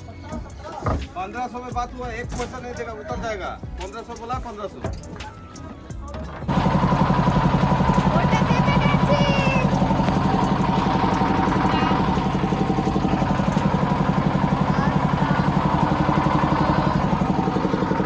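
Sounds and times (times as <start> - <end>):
motorboat engine chugging: 6.5 - 18.0.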